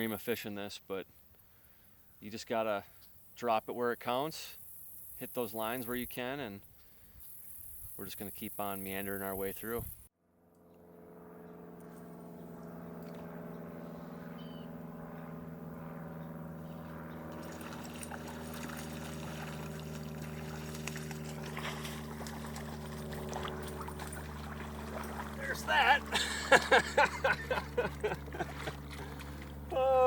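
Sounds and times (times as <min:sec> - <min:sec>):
creek water trickling: 0:16.8 - 0:29.7.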